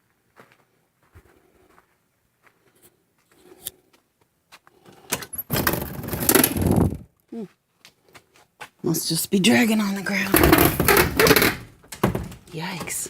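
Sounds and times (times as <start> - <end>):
door scraping along ground: 4.7 - 7.0, 10.2 - 13.0.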